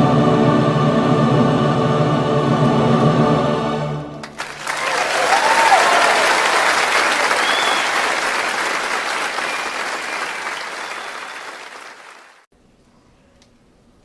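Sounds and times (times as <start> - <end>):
audience applauding: 4.2 - 12.5.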